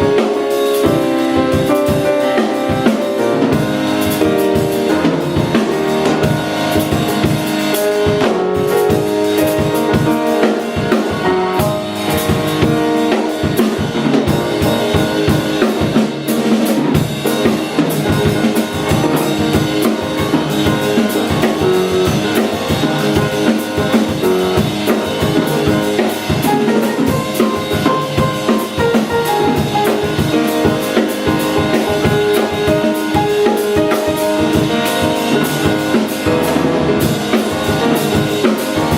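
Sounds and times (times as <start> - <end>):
drum kit beat: 0.0 - 38.9
live band playing christmas music: 0.0 - 38.9.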